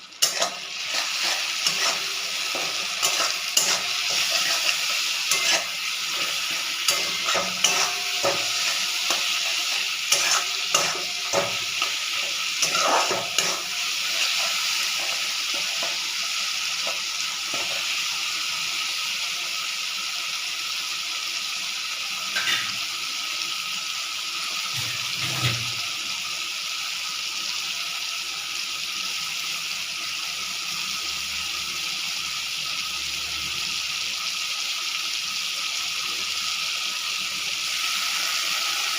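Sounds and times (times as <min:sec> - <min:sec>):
food sizzling in a pan: 0:00.0 - 0:38.9
spatula scraping a pan: 0:00.2 - 0:16.1, 0:16.8 - 0:18.0.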